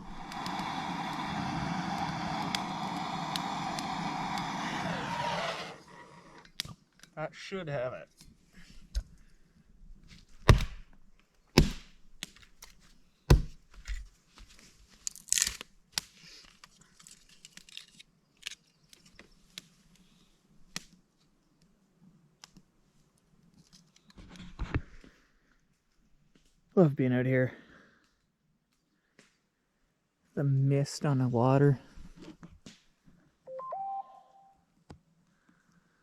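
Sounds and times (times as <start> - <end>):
sticks snapping: 10.4 - 11.0, 11.6 - 14.1, 15.0 - 19.7
light clicks and crackles: 13.7 - 21.8, 22.4 - 26.6.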